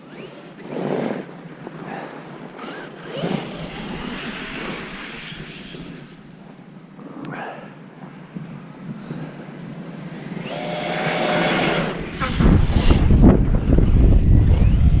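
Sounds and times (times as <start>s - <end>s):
noisy surges through snow: 0.0s - 15.0s
high electric motor whine: 2.6s - 6.9s, 8.7s - 15.0s.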